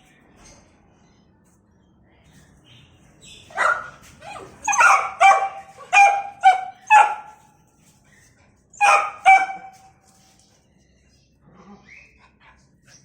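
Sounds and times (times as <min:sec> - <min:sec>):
puppy barking: 0:03.5 - 0:07.4, 0:08.8 - 0:09.9.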